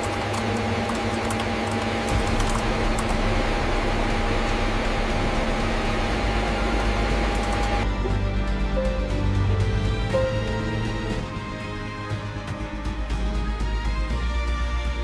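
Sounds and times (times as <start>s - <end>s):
steady mid-pitched tone: 2.1s - 8.8s
low hum: 2.1s - 14.1s.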